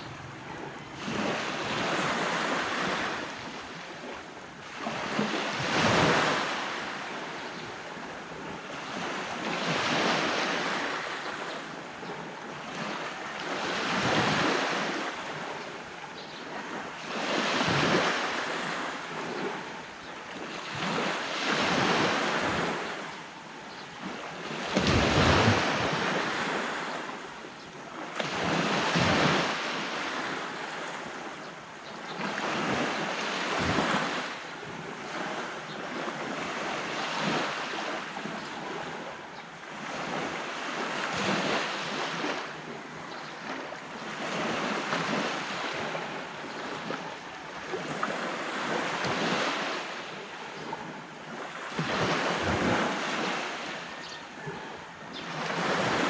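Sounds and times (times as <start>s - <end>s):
sea waves breaking on beach: 0.0s - 56.0s
wind on microphone: 24.7s - 26.6s, 51.8s - 53.5s.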